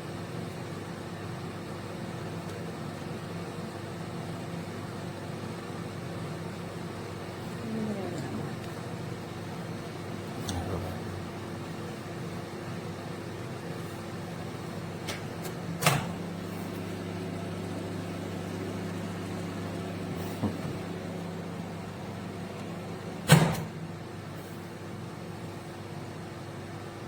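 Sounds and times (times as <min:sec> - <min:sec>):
microwave oven humming: 0:00.0 - 0:27.0.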